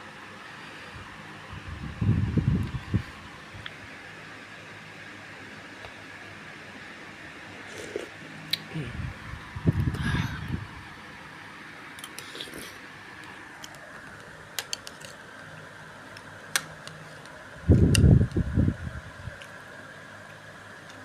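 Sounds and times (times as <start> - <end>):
fan hum: 0.0 - 21.0.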